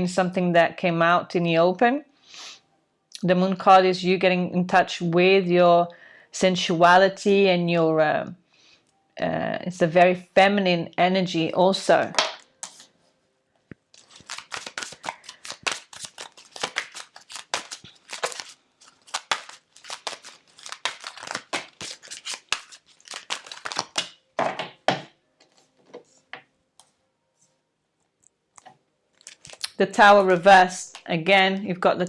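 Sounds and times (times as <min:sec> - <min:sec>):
cards shuffling with flicks: 0:12.2 - 0:12.9, 0:13.9 - 0:24.2.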